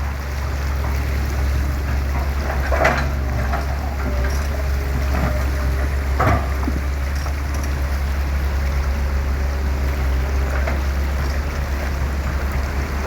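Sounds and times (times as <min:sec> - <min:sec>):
diesel engine droning: 0:00.0 - 0:13.0.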